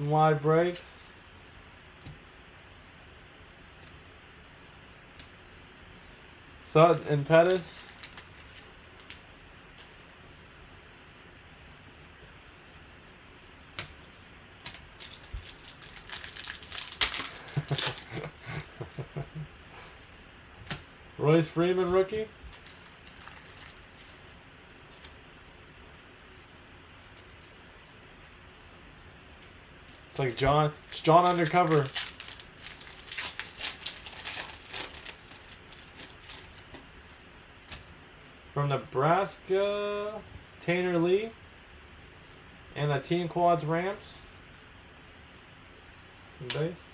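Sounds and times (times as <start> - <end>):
crackling clicks and rustles: 6.8 - 10.2, 13.7 - 19.3, 22.1 - 25.9, 26.8 - 37.9.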